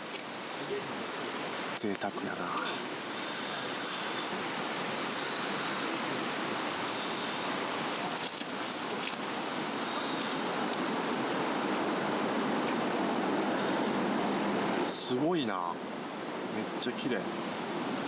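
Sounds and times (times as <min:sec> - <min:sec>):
fire hissing: 0:02.4 - 0:12.5
faint wood crackle: 0:06.7 - 0:11.0.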